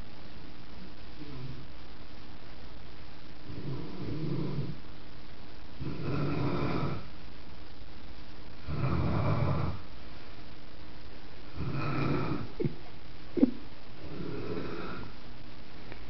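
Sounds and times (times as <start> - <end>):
woman snoring: 1.2 - 1.7, 3.4 - 4.8, 5.8 - 7.1, 8.6 - 9.8, 11.5 - 12.7, 13.4 - 15.2.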